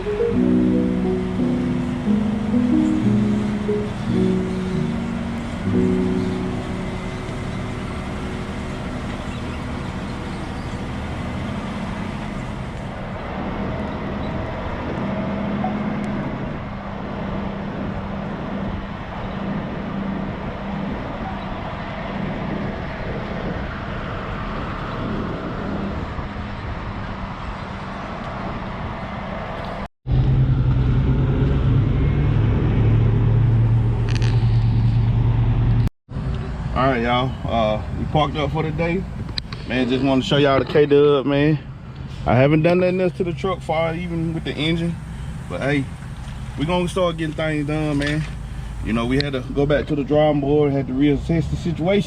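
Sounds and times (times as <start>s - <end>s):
deep engine drone: 0.0s - 27.0s, 30.1s - 40.2s
diesel truck engine running: 0.0s - 29.5s, 30.1s - 52.0s.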